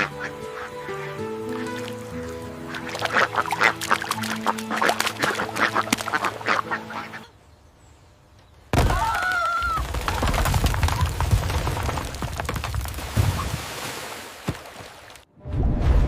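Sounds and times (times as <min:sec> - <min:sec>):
ducks quacking: 0:00.0 - 0:07.4.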